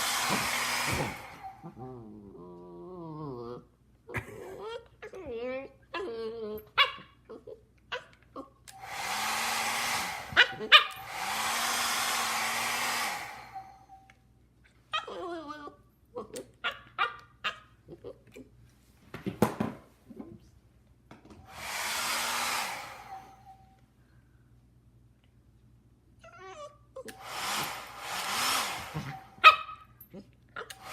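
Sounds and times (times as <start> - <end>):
hair dryer motor hum: 0.0 - 1.8, 8.7 - 14.0, 21.4 - 23.6, 27.1 - 29.4.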